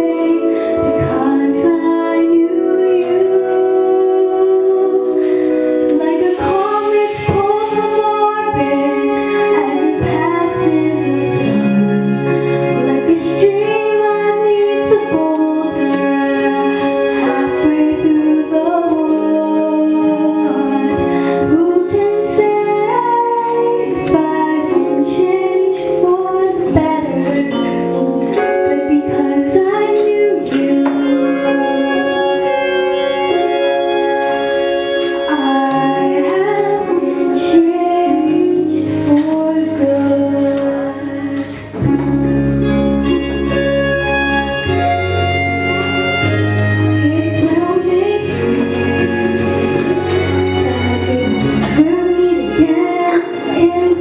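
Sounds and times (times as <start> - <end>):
woman singing a ballad: 0.0 - 11.9, 12.8 - 33.4, 35.0 - 42.2, 47.0 - 54.0
instrumental accompaniment: 0.0 - 54.0
deep bass notes: 38.4 - 54.0.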